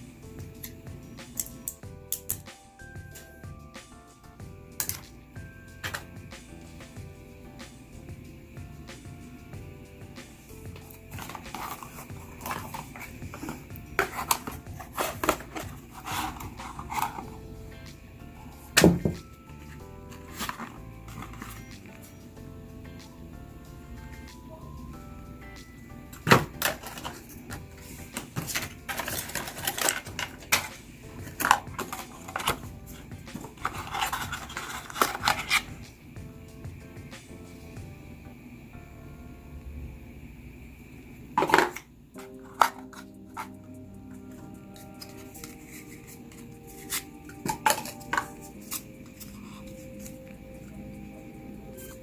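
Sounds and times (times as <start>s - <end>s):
quiet background music: 0.0s - 52.0s
packaging rustling: 11.1s - 17.3s, 28.2s - 30.7s, 31.3s - 35.7s
packaging clicks: 28.2s - 30.7s, 33.3s - 35.7s.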